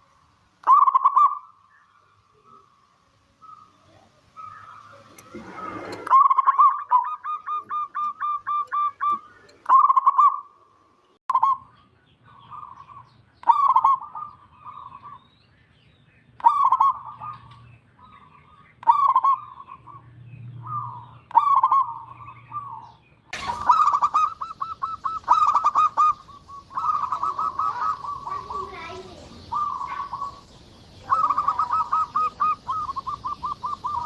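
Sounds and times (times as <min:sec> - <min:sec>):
dove cooing: 0:00.0 - 0:01.6, 0:03.4 - 0:10.5, 0:12.4 - 0:15.2, 0:16.4 - 0:17.6, 0:18.5 - 0:20.0, 0:20.6 - 0:34.0
rustle: 0:01.8 - 0:06.2, 0:23.3 - 0:34.0.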